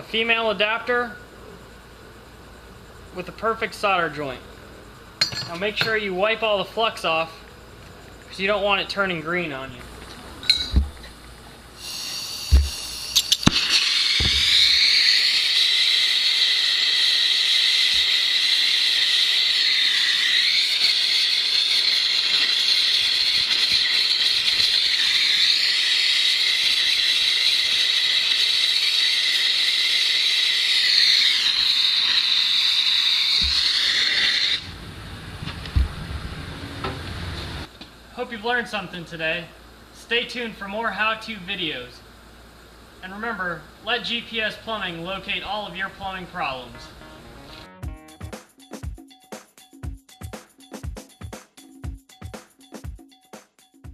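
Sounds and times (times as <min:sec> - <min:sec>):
gas torch flame hissing: 0:09.7 - 0:37.8.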